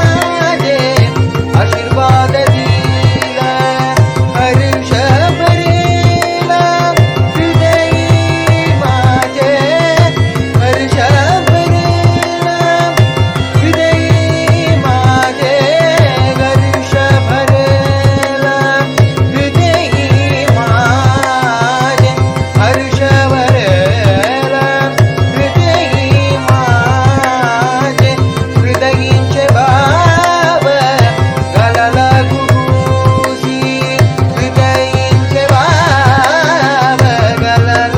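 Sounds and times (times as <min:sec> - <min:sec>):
harmonium chords: 0:00.0 - 0:37.9
mridangam drum strokes: 0:00.0 - 0:37.9
person singing ornamented melody: 0:00.0 - 0:37.9.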